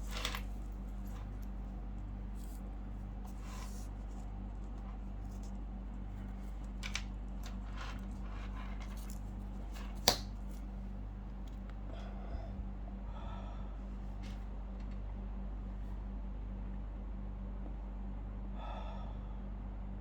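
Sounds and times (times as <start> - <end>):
low electrical hum: 0.0 - 20.0
watch strap clicks and taps: 10.0 - 10.6.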